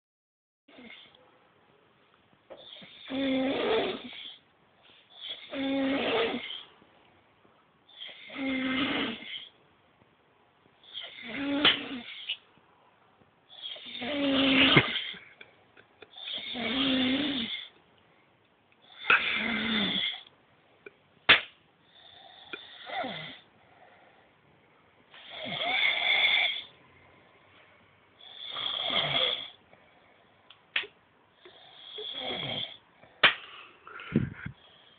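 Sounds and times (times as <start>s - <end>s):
person snoring heavily: 2.7s - 4.4s, 5.2s - 6.7s, 7.9s - 9.5s, 10.8s - 12.3s, 13.5s - 15.4s, 16.1s - 17.7s, 18.9s - 20.2s, 21.9s - 23.4s, 25.2s - 26.7s, 28.2s - 29.6s, 31.5s - 32.8s.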